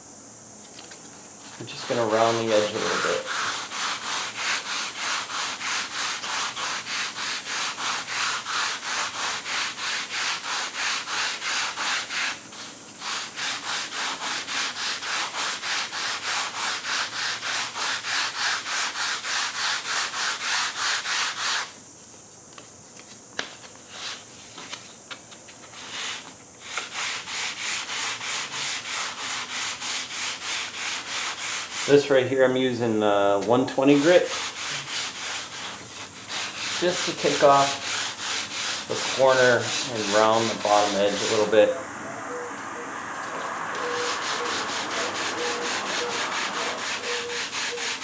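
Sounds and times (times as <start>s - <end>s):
sandpaper rasping strokes: 1.4s - 21.8s, 25.7s - 32.2s, 33.7s - 41.7s, 43.4s - 48.0s.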